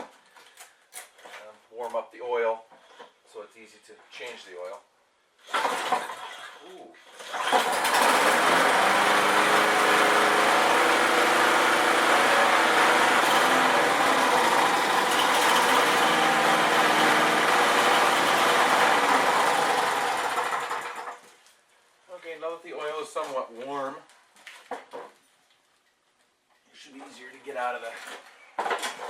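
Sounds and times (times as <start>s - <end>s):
lawn mower engine starting and running: 5.5s - 21.4s.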